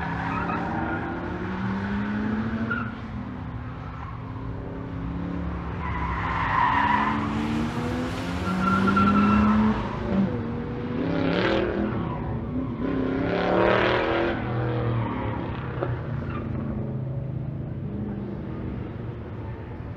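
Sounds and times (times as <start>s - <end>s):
race car engine passing: 0.0s - 17.0s
tyre squeal: 8.4s - 10.1s.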